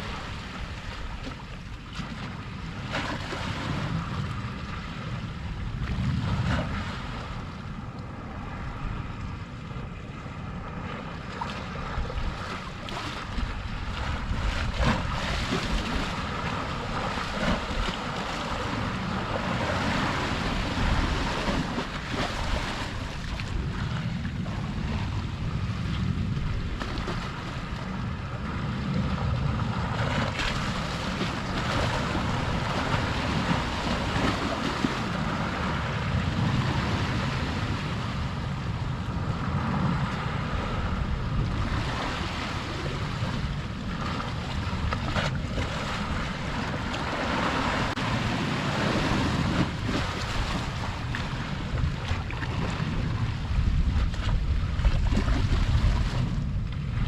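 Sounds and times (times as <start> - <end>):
sea waves washing on shore: 0.0 - 57.0
wind rumble on microphone: 0.0 - 57.0.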